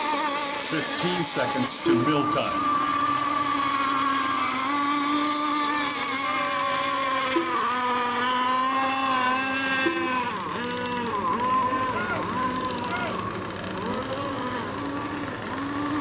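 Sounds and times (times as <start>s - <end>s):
model boat engines whining: 0.0s - 16.0s.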